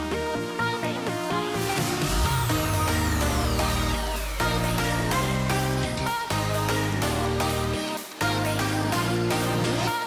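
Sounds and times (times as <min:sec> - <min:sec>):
electronic dance music: 0:00.0 - 0:10.0
falling synth sweep: 0:01.8 - 0:07.7.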